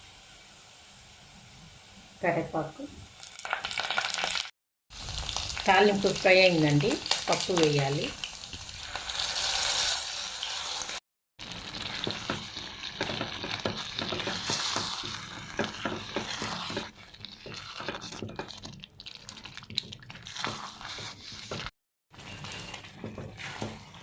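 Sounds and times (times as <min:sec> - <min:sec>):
oil sizzling in a pan: 0:00.0 - 0:24.0
spoon scraping a pan: 0:11.7 - 0:24.0.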